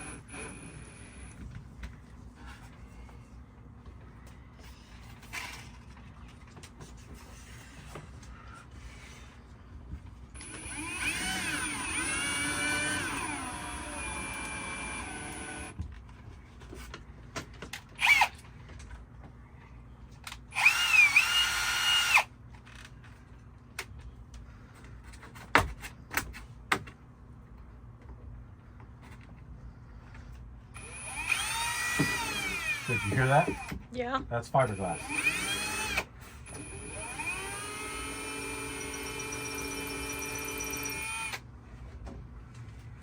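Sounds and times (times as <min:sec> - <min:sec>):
electric drill boring wood: 0:10.4 - 0:15.8, 0:18.0 - 0:18.3, 0:20.5 - 0:22.3, 0:30.8 - 0:33.8, 0:34.8 - 0:41.4.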